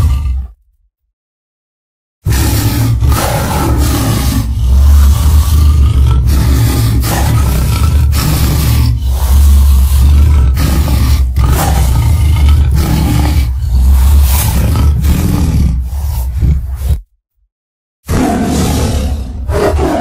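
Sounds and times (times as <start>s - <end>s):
deep monster roars: 0.0s - 0.6s, 2.2s - 17.0s, 18.1s - 20.0s.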